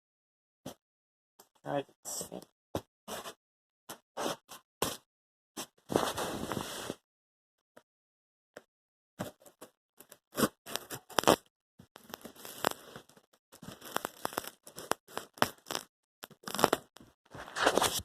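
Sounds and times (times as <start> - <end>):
packing material crackling: 10.4 - 11.4, 12.0 - 18.0
cardboard box tearing: 13.7 - 15.8, 17.4 - 18.0.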